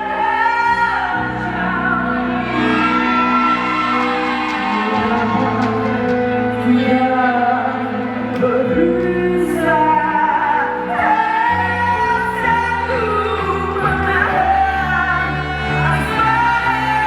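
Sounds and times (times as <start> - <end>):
person singing: 0.0 - 17.0
band accompaniment: 2.4 - 9.3.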